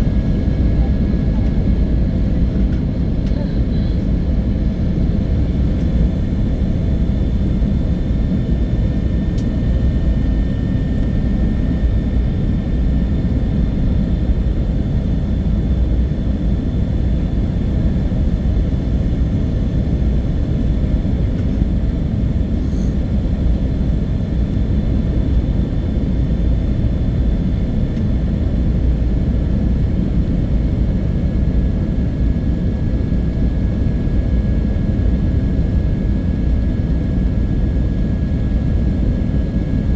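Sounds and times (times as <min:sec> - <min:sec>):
faint steady whines: 0:00.0 - 0:39.9.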